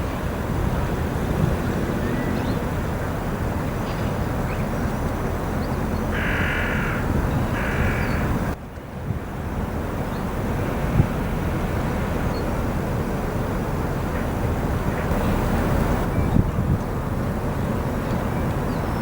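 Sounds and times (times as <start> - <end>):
crow-like bird caws: 6.1 - 8.2
steady low rumble: 15.1 - 16.1.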